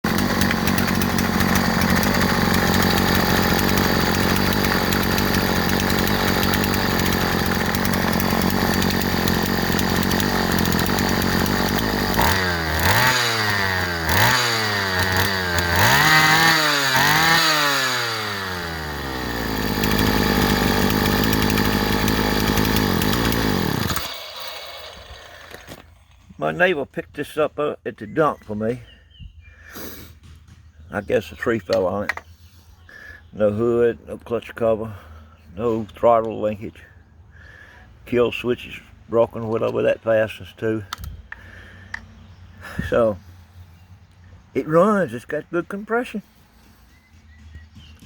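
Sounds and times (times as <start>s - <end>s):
chainsaw engine revving: 0.0s - 26.7s.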